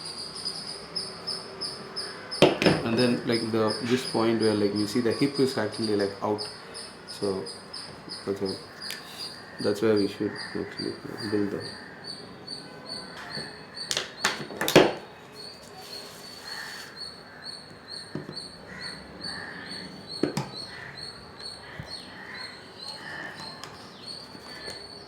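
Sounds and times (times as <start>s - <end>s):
high regular chirping: 0.0s - 14.4s, 15.0s - 25.0s.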